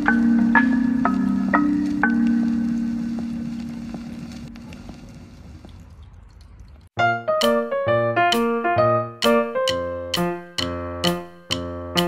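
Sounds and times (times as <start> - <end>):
piano-like keyboard melody: 0.0 - 4.6, 7.0 - 12.0.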